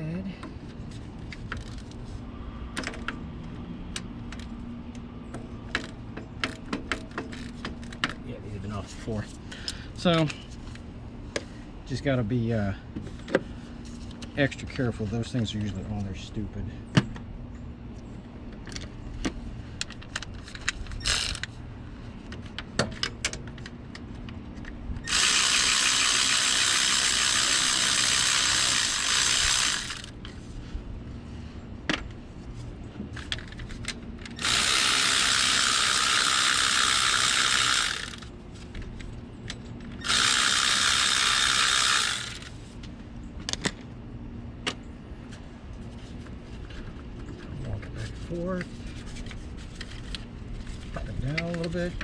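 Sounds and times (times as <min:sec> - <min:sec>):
ratchet clicks: 0:21.0 - 0:21.5, 0:25.0 - 0:30.2, 0:33.3 - 0:38.3, 0:39.9 - 0:42.5
fast continuous ratcheting: 0:25.1 - 0:30.2, 0:34.4 - 0:38.3, 0:40.0 - 0:42.5.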